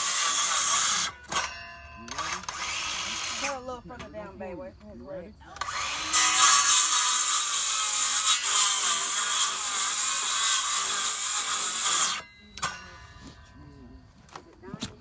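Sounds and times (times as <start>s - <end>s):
power saw cutting wood: 0.0s - 4.1s, 5.6s - 13.4s.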